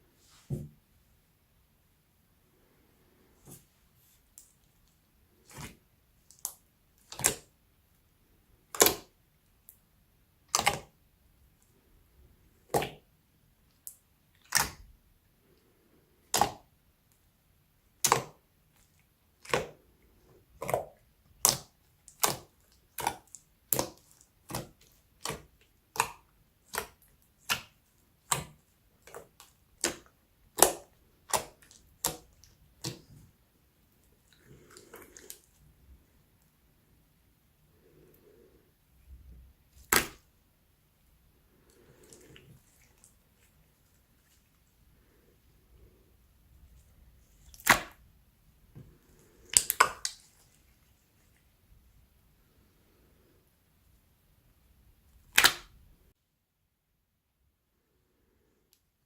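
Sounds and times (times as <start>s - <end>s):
slime popping and clicking: 47.5s - 48.0s, 49.5s - 50.2s, 55.2s - 55.8s.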